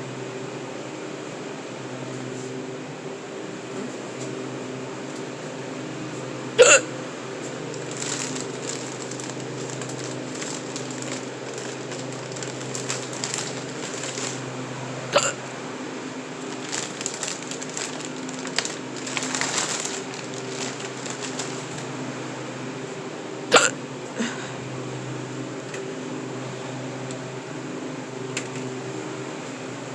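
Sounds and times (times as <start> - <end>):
steady machine hum: 0.0 - 29.9
person hiccuping: 6.6 - 7.0, 15.2 - 15.4, 23.5 - 24.4.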